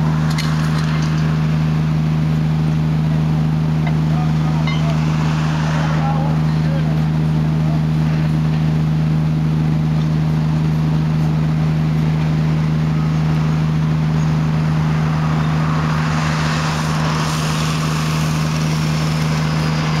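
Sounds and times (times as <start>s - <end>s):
machine drone: 0.0s - 20.0s.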